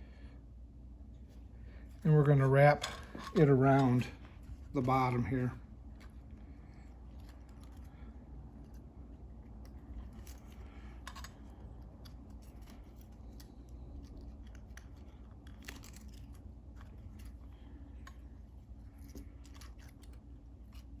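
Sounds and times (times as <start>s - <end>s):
low steady hum: 0.0s - 21.0s
aluminium foil crinkling: 9.5s - 18.2s.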